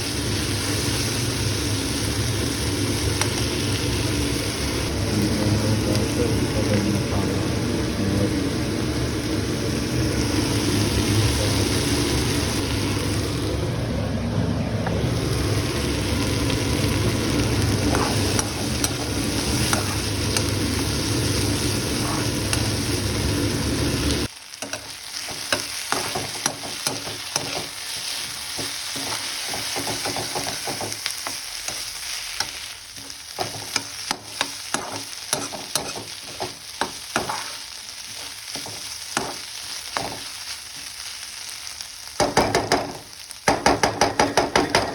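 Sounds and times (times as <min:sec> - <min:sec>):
vegetables sizzling in hot oil: 0:00.0 - 0:06.7, 0:08.4 - 0:13.6, 0:15.0 - 0:44.9
spatula scraping a pan: 0:17.8 - 0:20.5, 0:21.8 - 0:22.6, 0:24.6 - 0:39.4.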